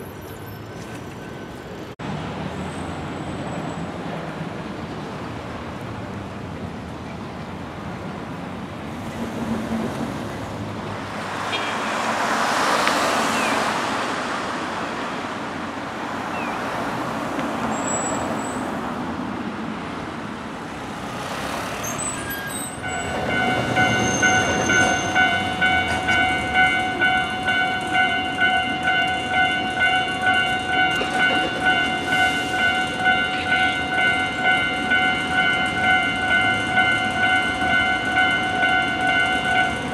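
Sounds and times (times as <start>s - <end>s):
road traffic passing: 0.0s - 39.9s
level crossing bell dinging: 22.8s - 39.9s.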